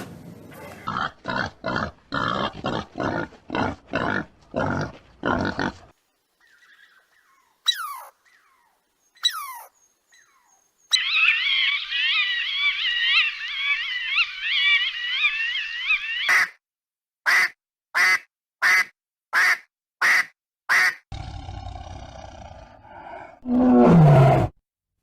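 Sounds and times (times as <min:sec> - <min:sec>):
pig grunting: 0:00.5 - 0:05.9, 0:21.1 - 0:24.6
sharp falling calls: 0:10.9 - 0:16.5.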